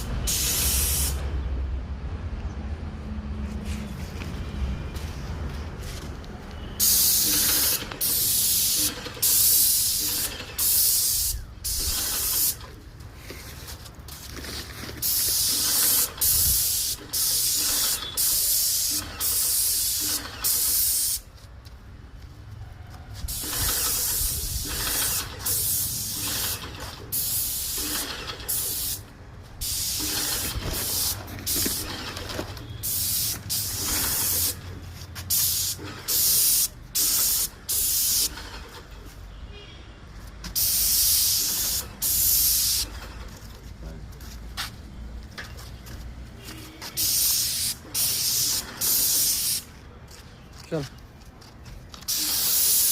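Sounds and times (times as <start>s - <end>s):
paint spray hiss: 0.0s - 1.2s, 6.8s - 12.7s, 15.0s - 21.3s, 23.3s - 29.0s, 29.6s - 32.0s, 32.8s - 34.6s, 35.2s - 38.3s, 40.5s - 42.9s, 46.9s - 49.7s, 52.1s - 52.9s.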